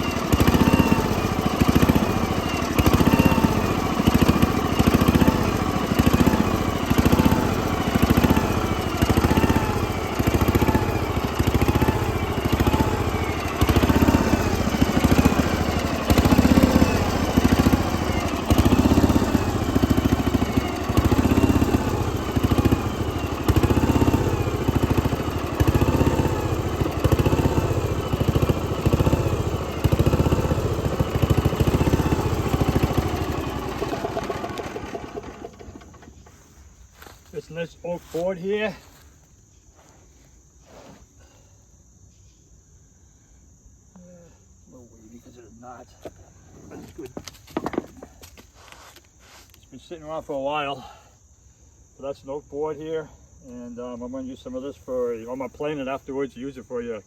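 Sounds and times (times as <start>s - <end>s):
sawmill running: 0.0s - 39.0s, 46.8s - 49.0s.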